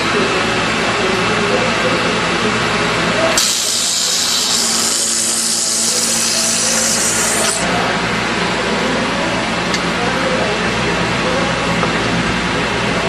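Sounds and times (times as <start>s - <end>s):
machine motor running: 2.5s - 9.8s
cutter shaving wood hiss: 3.3s - 7.8s.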